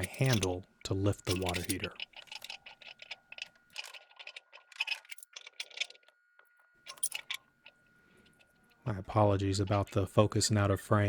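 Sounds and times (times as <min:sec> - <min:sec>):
metallic clicks of pipe fittings: 0:00.0 - 0:00.6, 0:01.2 - 0:06.2, 0:06.9 - 0:08.9.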